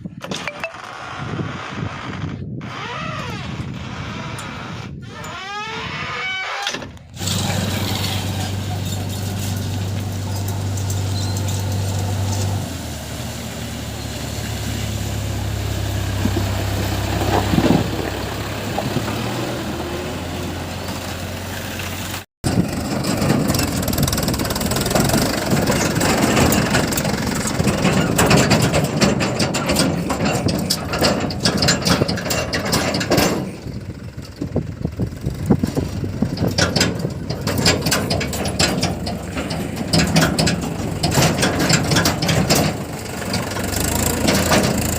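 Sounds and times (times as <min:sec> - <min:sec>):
diesel engines running: 0:07.0 - 0:44.9
sharp clicks and knocks: 0:22.4 - 0:34.4, 0:35.5 - 0:44.9.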